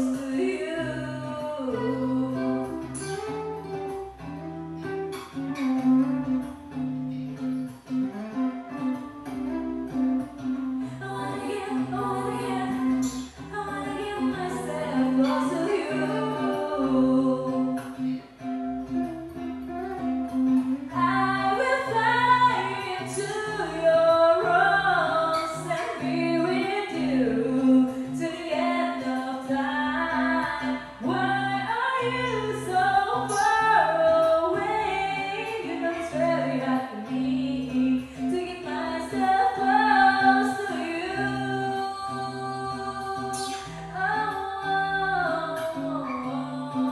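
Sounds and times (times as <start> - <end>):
woman singing pop ballad: 0.0 - 3.2, 10.8 - 18.2, 20.9 - 46.9
karaoke backing track: 0.0 - 4.2, 7.6 - 19.1, 19.8 - 46.9.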